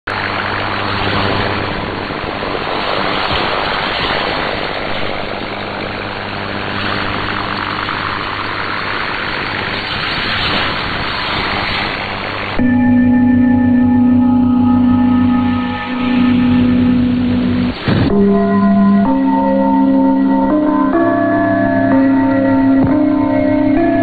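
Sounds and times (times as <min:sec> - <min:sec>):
low hum: 0:00.1 - 0:24.0
steady musical tone: 0:12.6 - 0:24.0.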